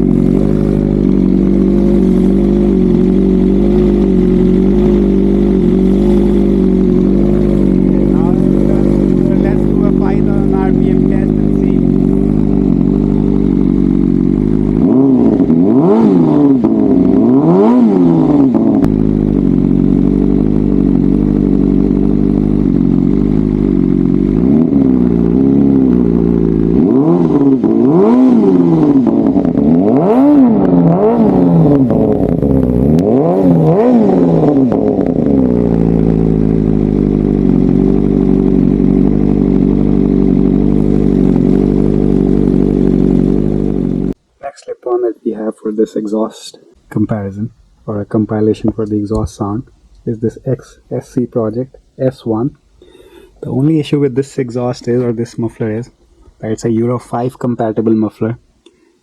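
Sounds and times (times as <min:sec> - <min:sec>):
motorcycle engine idling and revving: 0:00.0 - 0:44.2.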